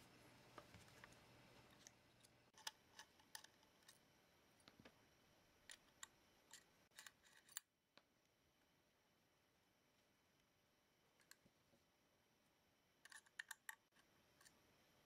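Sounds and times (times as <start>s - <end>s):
laptop parts clicking and tapping: 13.1s - 14.6s.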